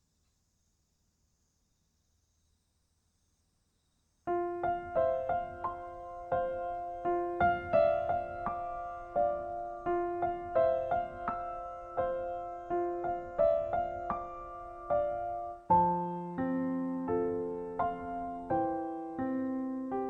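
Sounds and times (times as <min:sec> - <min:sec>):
calm piano music: 0:04.3 - 0:20.0.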